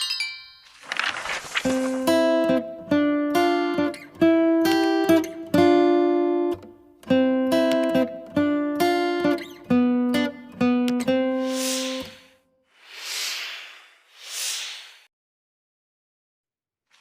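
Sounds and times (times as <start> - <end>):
acoustic guitar chords: 2.0 - 12.1.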